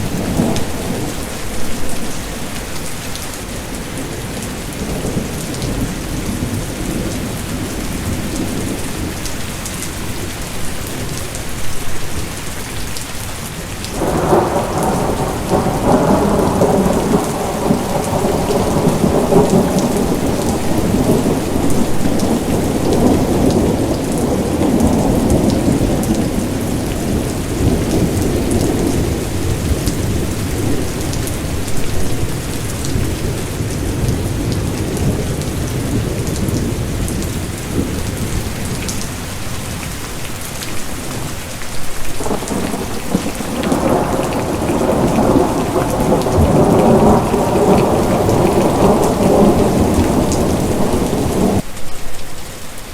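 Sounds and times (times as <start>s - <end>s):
thunder rumbling: 0.0s - 3.0s, 14.0s - 39.9s, 41.0s - 51.6s
steady rain falling: 0.0s - 52.9s.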